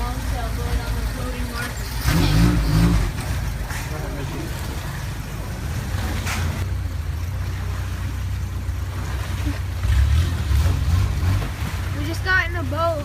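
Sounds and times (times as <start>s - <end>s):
vehicle engine rumble: 0.0s - 13.0s.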